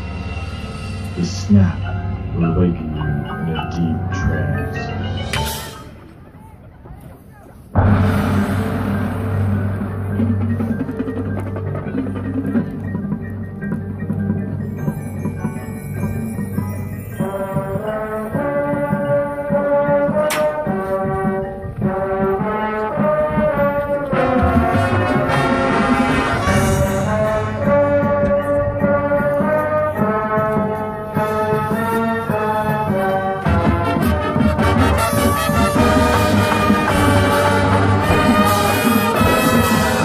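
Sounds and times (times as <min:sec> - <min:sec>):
drums: 0:00.0 - 0:40.0
brass band playing held chords: 0:07.8 - 0:12.6, 0:17.2 - 0:40.0.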